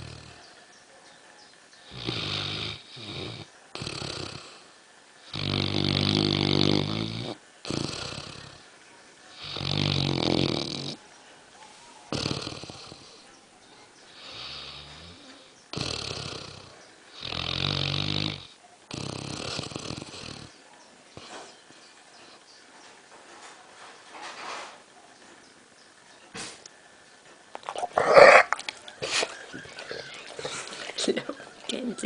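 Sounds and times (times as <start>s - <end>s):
dog snoring: 0.0s - 0.4s, 1.8s - 8.7s, 9.4s - 11.0s, 12.1s - 13.3s, 14.1s - 20.6s.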